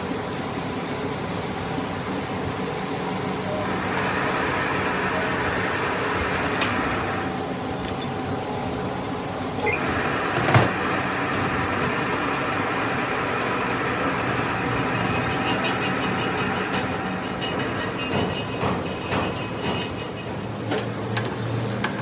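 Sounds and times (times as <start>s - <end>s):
workshop machine humming: 0.6s - 22.0s.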